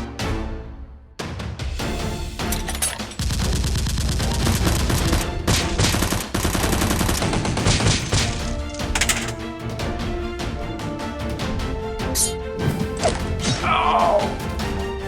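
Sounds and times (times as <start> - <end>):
action background music: 0.0 - 15.0
automatic gunfire: 3.2 - 9.3.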